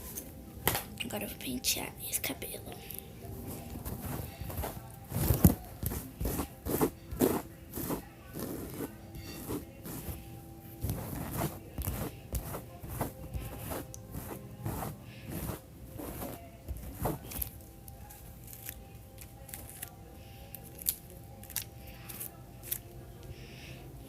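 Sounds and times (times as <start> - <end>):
comb scratching through hair: 3.4 - 17.5.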